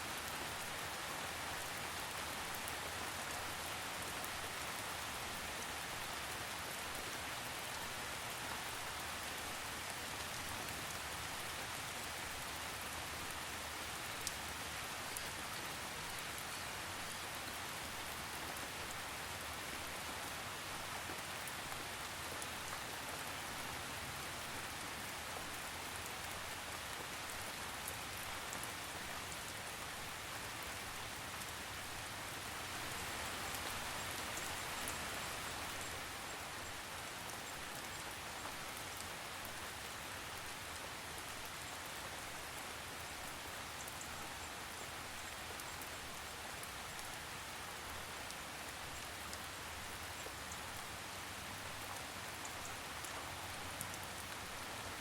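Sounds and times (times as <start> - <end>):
steady rainfall hiss: 0.0 - 55.0.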